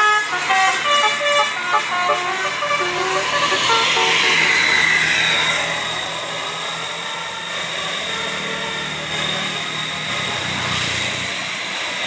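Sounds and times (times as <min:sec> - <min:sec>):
bus horn tune: 0:00.0 - 0:05.0
bus running: 0:00.0 - 0:12.0
thin high whine: 0:00.2 - 0:10.2.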